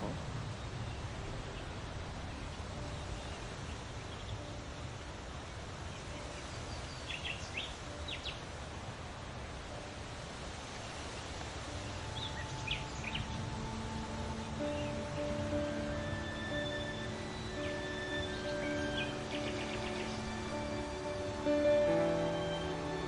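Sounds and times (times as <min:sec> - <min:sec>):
forest rushing hiss: 0:00.0 - 0:23.0
bird chirps: 0:11.7 - 0:23.0.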